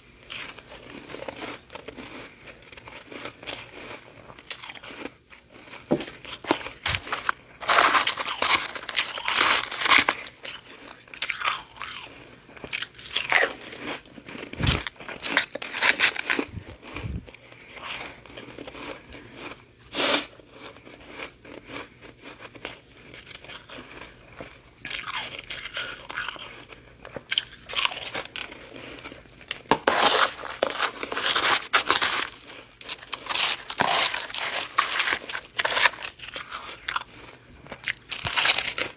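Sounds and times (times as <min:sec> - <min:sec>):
quiet chewing: 0:00.2 - 0:29.7
crunching icy frost: 0:06.2 - 0:17.2, 0:29.8 - 0:38.9.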